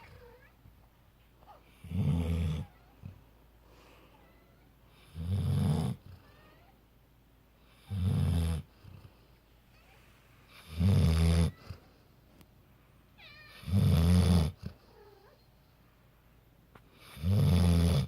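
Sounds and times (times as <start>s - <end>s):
dog snoring: 1.7s - 2.8s, 4.9s - 6.2s, 7.7s - 9.1s, 10.5s - 11.8s, 13.6s - 14.8s, 17.0s - 18.0s.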